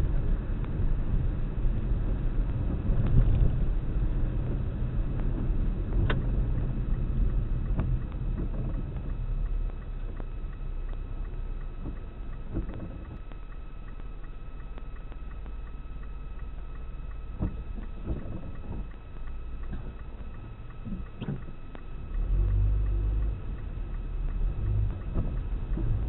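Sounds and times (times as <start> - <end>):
car road and engine rumble: 0.0 - 26.0
faint ticks: 4.4 - 26.0.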